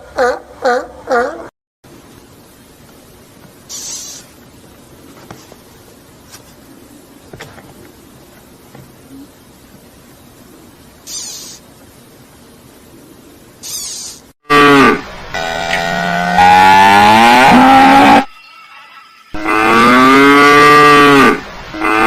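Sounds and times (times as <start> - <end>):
cow mooing: 14.5 - 18.3, 19.4 - 22.0.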